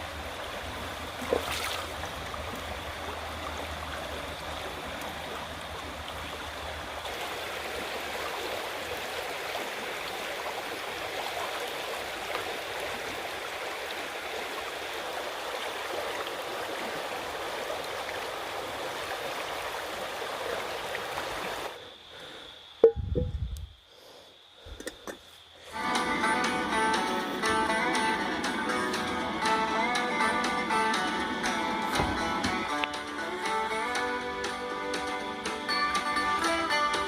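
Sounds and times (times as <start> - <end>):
river water rushing over rocks: 0.0 - 21.7.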